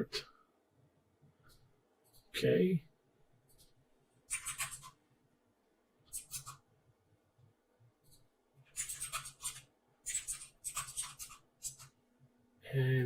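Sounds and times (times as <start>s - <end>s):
mouse rubbing across desk: 4.3s - 5.0s, 6.1s - 6.6s, 8.0s - 12.0s.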